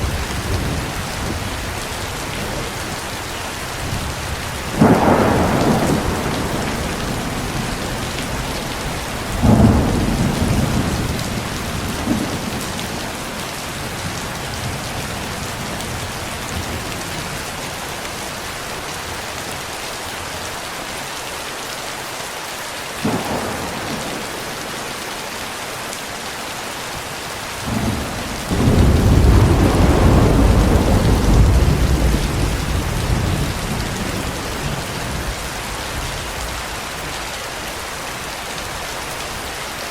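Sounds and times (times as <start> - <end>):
steady rain: 0.0 - 39.9
thunder: 3.8 - 13.2, 23.0 - 24.5, 27.6 - 36.6.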